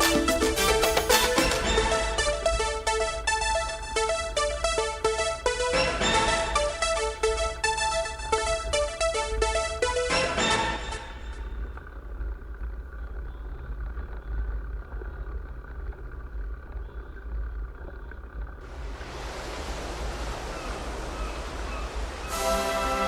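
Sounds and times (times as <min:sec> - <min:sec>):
wind rumbling on microphone: 0:12.2 - 0:23.0
steady hiss: 0:18.6 - 0:23.0.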